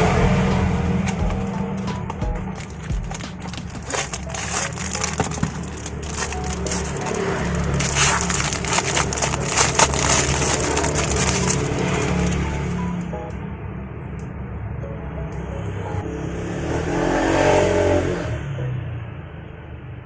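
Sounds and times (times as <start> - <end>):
background music: 0.0 - 13.8, 14.6 - 19.4
plastic packaging crinkling: 2.4 - 12.8.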